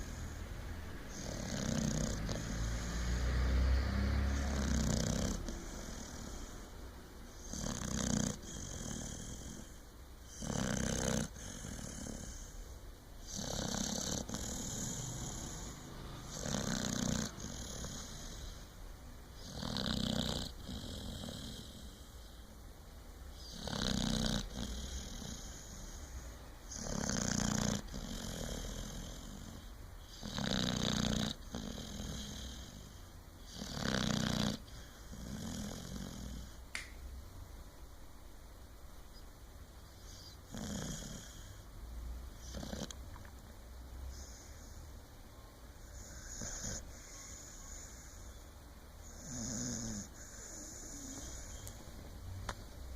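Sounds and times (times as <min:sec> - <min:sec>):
person snoring: 0:00.0 - 0:06.7, 0:07.4 - 0:12.6, 0:13.2 - 0:18.6, 0:19.4 - 0:22.1, 0:23.4 - 0:26.0, 0:26.7 - 0:32.9, 0:33.5 - 0:36.6, 0:40.2 - 0:41.5, 0:46.0 - 0:48.3, 0:49.0 - 0:51.7.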